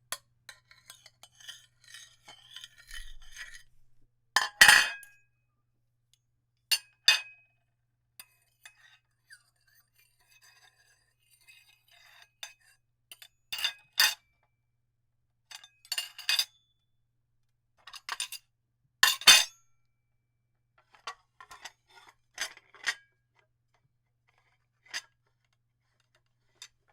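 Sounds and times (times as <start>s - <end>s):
dishes scraping and rattling: 0.8s - 3.7s.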